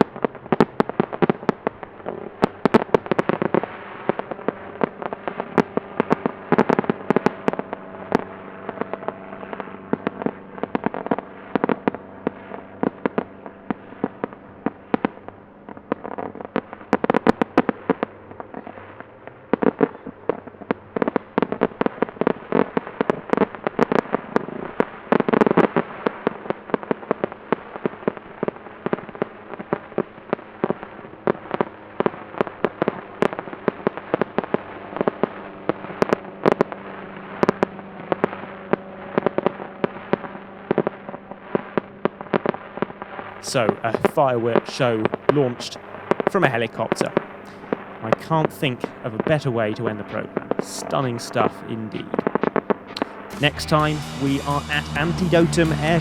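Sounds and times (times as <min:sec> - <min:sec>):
firework pops and bangs: 0:00.0 - 0:07.4, 0:43.4 - 0:56.0.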